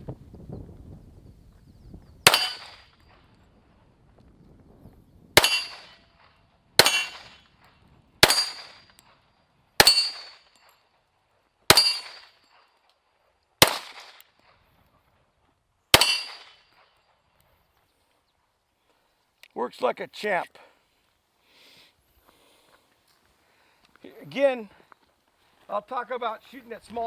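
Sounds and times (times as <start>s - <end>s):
pistol shots: 2.3s - 2.9s, 5.4s - 6.0s, 6.8s - 7.4s, 8.2s - 9.0s, 9.8s - 10.5s, 11.7s - 12.3s, 13.6s - 14.3s, 15.9s - 16.8s.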